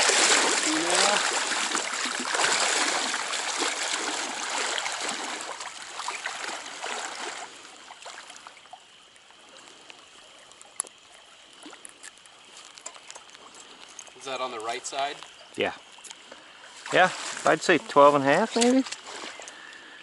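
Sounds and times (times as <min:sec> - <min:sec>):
stream water trickling: 0:00.0 - 0:20.0.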